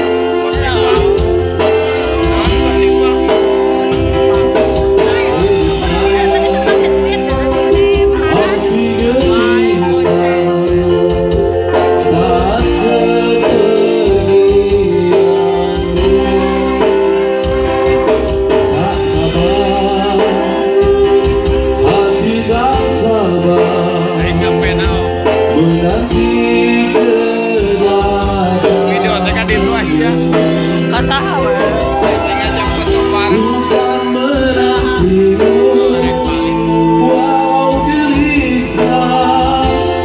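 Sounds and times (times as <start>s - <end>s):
instrumental music with steady beat: 0.0s - 40.0s.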